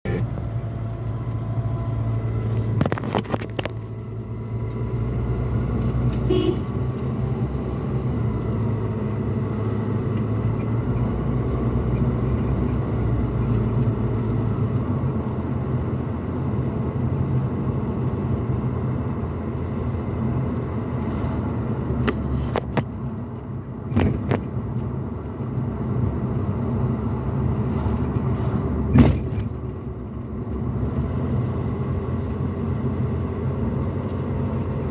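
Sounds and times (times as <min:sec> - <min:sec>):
engine and road rumble: 0:00.0 - 0:34.9.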